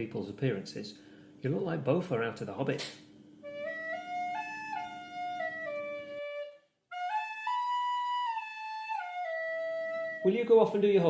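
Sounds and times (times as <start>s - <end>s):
flute-like woodwind melody: 3.4s - 10.8s.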